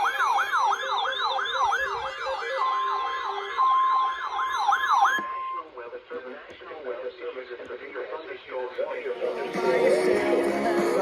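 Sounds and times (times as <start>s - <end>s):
electronic yelp siren: 0.0s - 5.7s.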